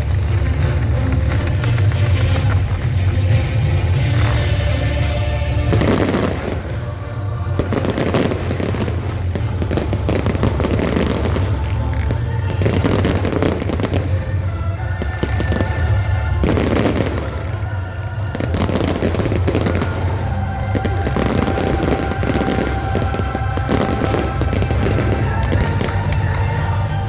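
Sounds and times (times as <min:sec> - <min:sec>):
fireworks bursting and crackling: 0:00.0 - 0:27.0
music playing: 0:00.0 - 0:27.0.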